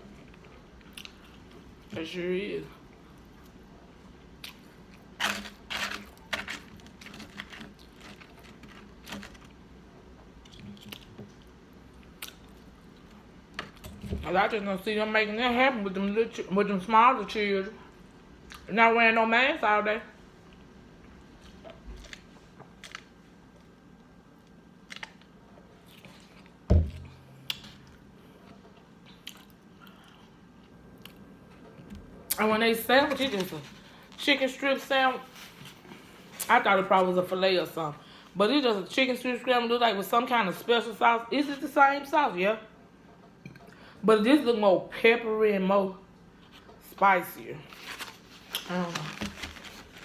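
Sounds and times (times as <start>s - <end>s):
person chewing food: 24.9s - 31.3s
dull thump: 26.7s - 27.2s.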